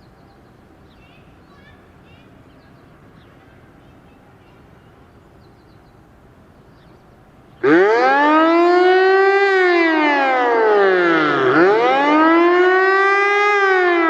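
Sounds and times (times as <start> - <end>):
pneumatic siren wailing: 7.6 - 14.0.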